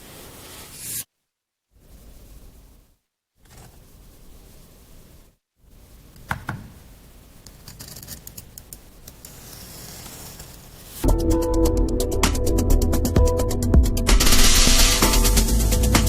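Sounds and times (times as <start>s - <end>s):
music with fast clicking beat: 11.1s - 16.0s.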